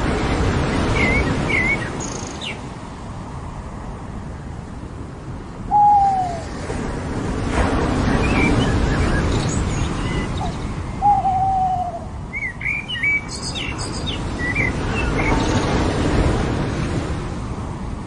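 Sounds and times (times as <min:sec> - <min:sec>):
ocean surf on a beach: 0:00.0 - 0:18.0.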